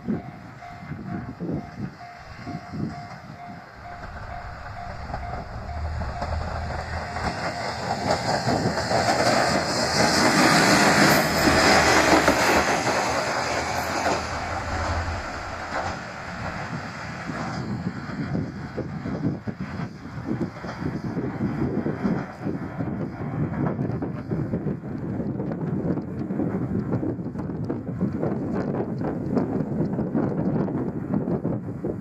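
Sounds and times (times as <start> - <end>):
crossing bell dinging: 0.0 - 8.8
diesel railcar engine hum: 0.0 - 32.0
wheels clacking over rail joints: 2.0 - 17.5.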